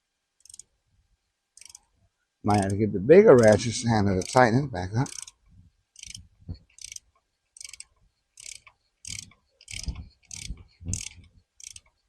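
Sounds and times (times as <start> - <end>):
socket ratchet clicking: 0.4 - 0.7, 1.6 - 1.9, 3.4 - 3.6, 4.2 - 5.4, 6.0 - 12.0.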